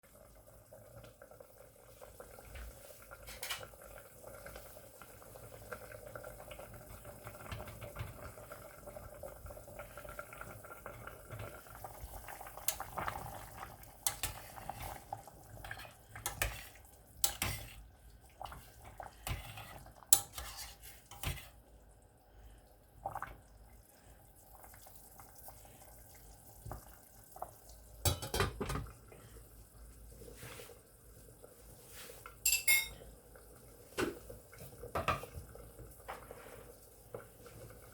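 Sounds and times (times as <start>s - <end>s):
dishes and cutlery clinking: 28.1s - 28.8s, 32.4s - 33.0s.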